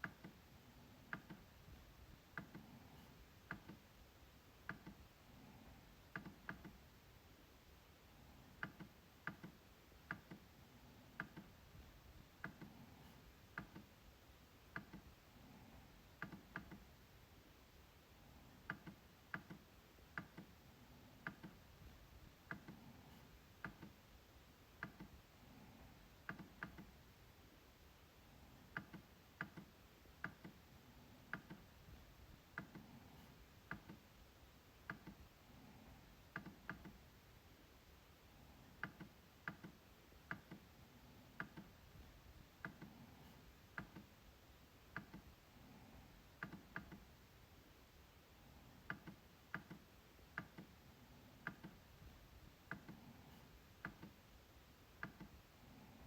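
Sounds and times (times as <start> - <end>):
trackpad clicks: 1.0 - 1.5, 3.5 - 3.8, 8.6 - 10.5, 11.1 - 11.6, 13.5 - 13.9, 14.7 - 15.1, 18.6 - 20.6, 21.2 - 21.6, 26.2 - 27.0, 28.7 - 30.6, 31.2 - 31.7, 32.5 - 34.0, 36.3 - 37.0, 38.8 - 40.7, 41.4 - 41.7, 44.9 - 45.3, 46.4 - 47.1, 48.9 - 50.7, 51.4 - 51.9, 53.8 - 54.2, 55.0 - 55.4.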